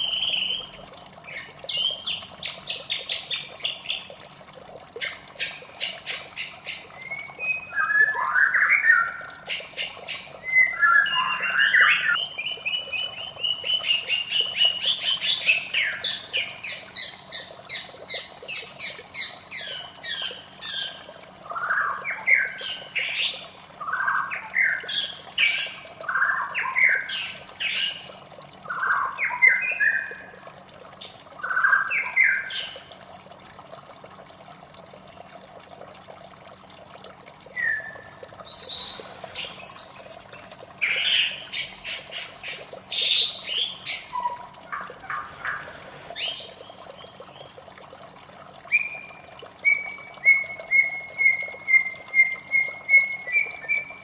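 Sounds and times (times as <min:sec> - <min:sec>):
bird singing whistled phrases: 0:00.0 - 0:00.7, 0:07.0 - 0:09.2, 0:10.4 - 0:13.8, 0:37.6 - 0:41.3, 0:48.7 - 0:54.0
running water: 0:00.0 - 0:54.0.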